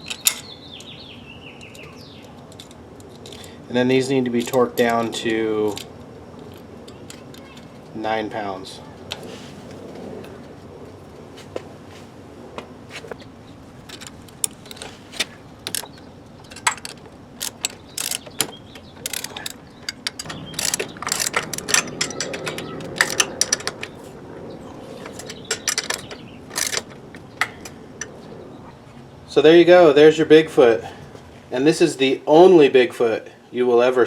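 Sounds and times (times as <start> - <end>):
ratchet wrench clicking: 15.6 - 23.8, 25.1 - 27.0.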